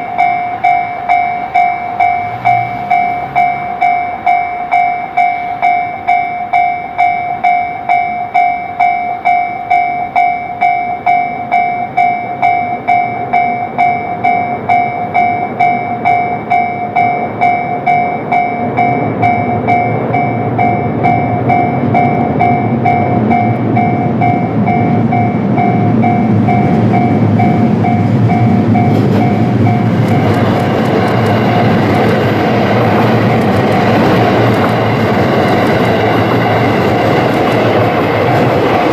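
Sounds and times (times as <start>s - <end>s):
level crossing bell ringing: 0.0s - 38.9s
train rumble: 0.0s - 38.9s
train wheels clacking over joints: 11.5s - 38.9s.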